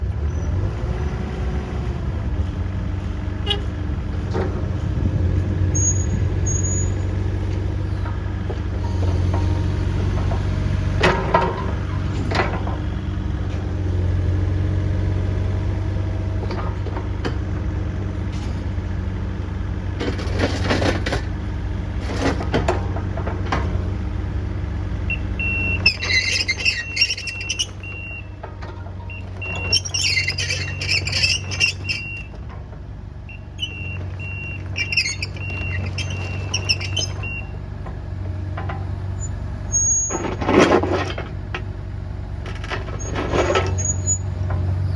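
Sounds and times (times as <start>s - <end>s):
excavator diesel engine running: 0.0s - 44.9s
squeaking: 25.4s - 32.3s, 33.6s - 37.5s, 39.2s - 40.9s.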